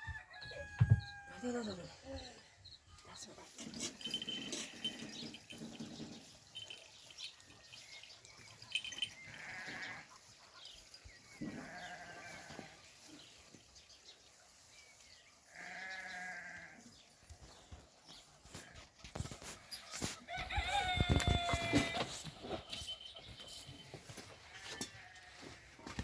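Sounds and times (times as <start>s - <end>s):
sheep bleating: 9.3s - 10.2s, 11.5s - 12.8s, 15.5s - 16.9s.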